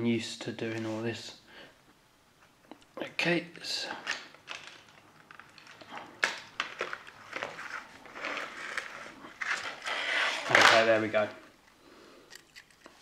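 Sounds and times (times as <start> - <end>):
plastic tray crackling and clicking: 4.0 - 7.6.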